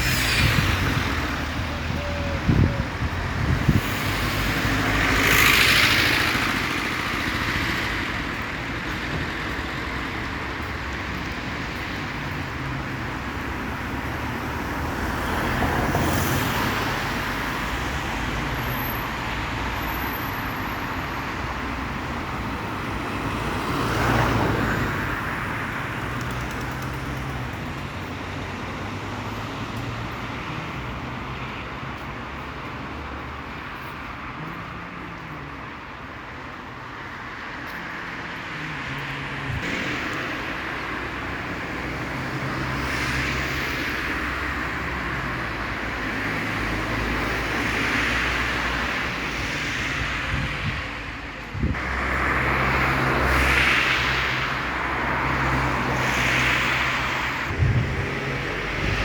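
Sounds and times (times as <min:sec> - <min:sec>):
road traffic rumble: 0:00.0 - 0:59.0
vehicles passing: 0:00.0 - 0:59.0.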